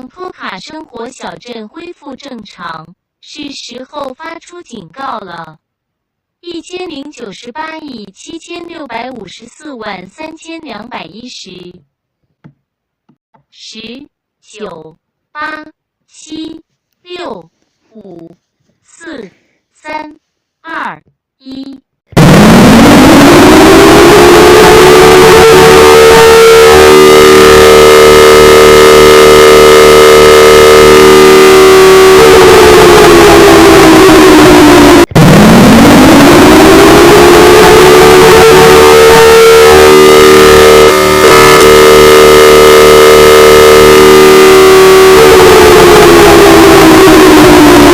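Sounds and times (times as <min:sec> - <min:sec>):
loud multi-tone siren: 0:22.2 - 0:47.9.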